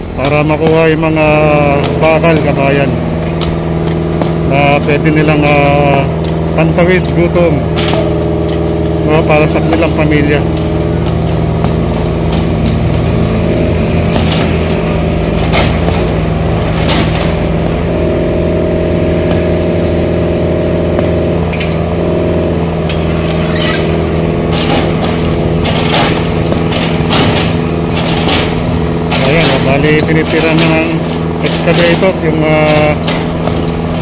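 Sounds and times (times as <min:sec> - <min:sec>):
excavator engine running: 0:00.0 - 0:34.0
concrete and metal knocks: 0:09.4 - 0:18.2, 0:22.8 - 0:34.0.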